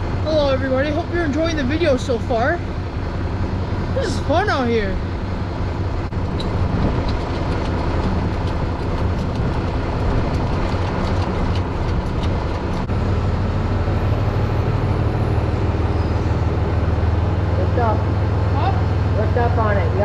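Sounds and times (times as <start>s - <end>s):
tractor engine running: 0.0s - 20.0s.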